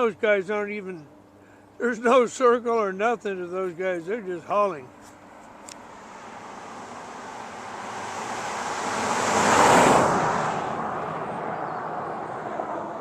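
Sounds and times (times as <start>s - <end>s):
vehicle passing by: 5.7s - 13.0s.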